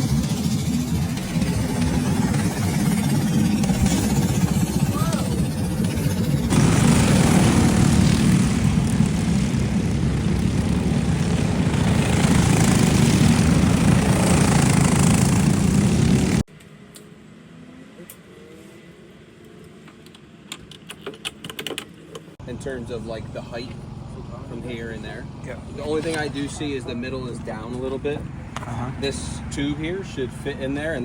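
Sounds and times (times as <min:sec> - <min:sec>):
go-kart engine running loud: 0:00.0 - 0:16.5.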